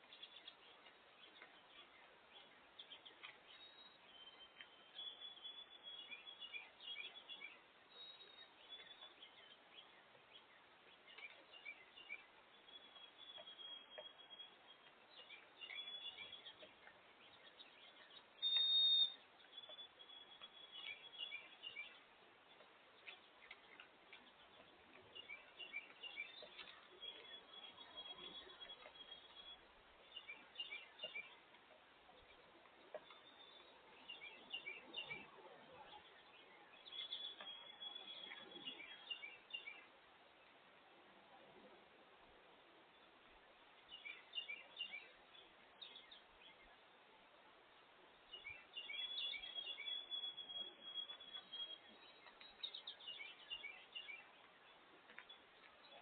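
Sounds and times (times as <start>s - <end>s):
small birds chirping and twittering: 0.0s - 56.0s
high whistled bird note: 18.4s - 19.2s
thin whistled bird note: 18.4s - 21.8s.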